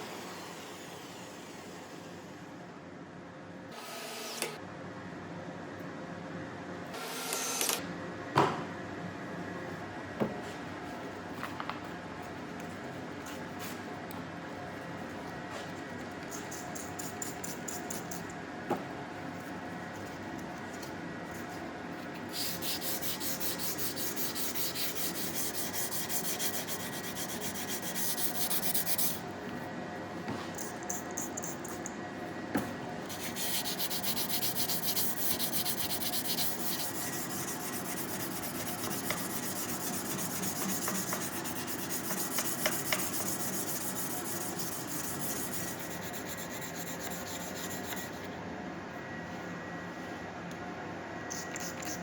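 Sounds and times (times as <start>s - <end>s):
sandpaper rubbing on steel: 22.3s - 29.2s, 33.1s - 48.2s.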